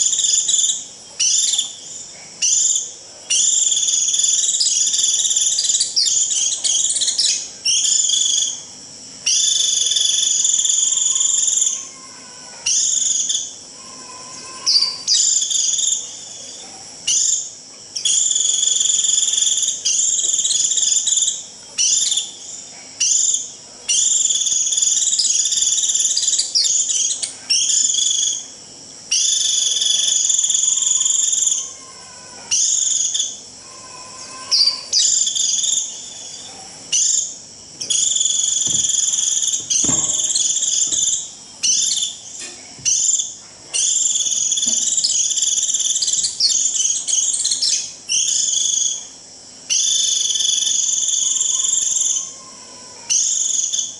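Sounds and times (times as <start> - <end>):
bird shrill high calls: 9.3 - 16.2, 29.1 - 49.1, 49.7 - 53.9.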